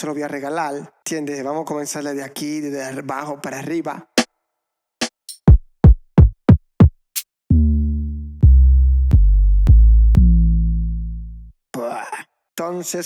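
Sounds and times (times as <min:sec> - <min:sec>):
kick drum hits: 0:05.5 - 0:07.0
long low bass notes: 0:07.5 - 0:11.5.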